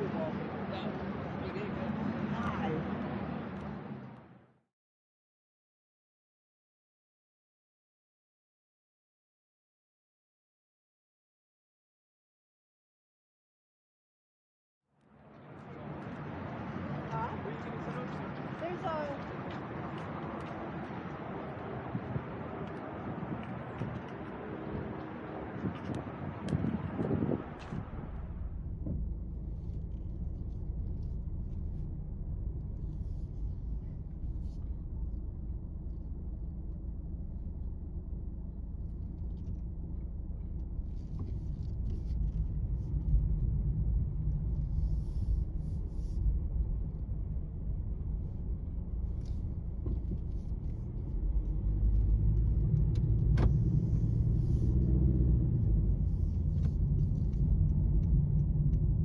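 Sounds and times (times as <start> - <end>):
road traffic rumble: 0.0 - 4.5, 15.0 - 59.0
faint ticks: 56.2 - 59.0.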